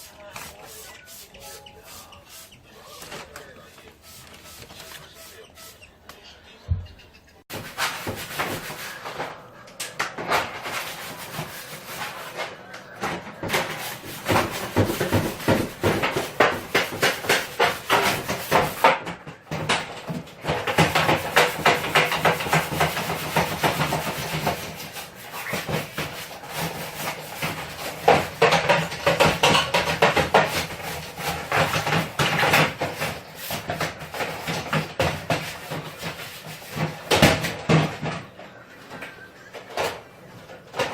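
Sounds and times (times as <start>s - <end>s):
hand rubbing and scraping: 0.0s - 6.5s, 7.4s - 12.7s, 13.3s - 19.0s, 19.8s - 38.0s
scattered knocks: 13.0s - 38.4s.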